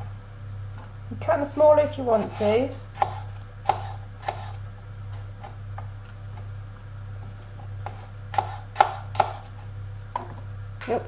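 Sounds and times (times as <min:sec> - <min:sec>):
low steady hum: 0:00.0 - 0:11.0
knife tapping on chopping board: 0:03.0 - 0:04.5, 0:07.8 - 0:09.5.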